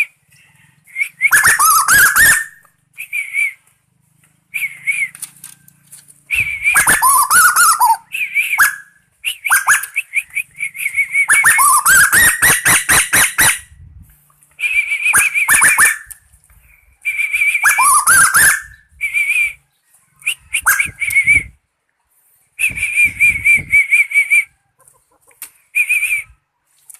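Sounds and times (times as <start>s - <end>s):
bird calling with trills and clicks: 1.2s - 2.7s, 6.7s - 13.6s, 15.1s - 16.2s, 17.6s - 18.8s.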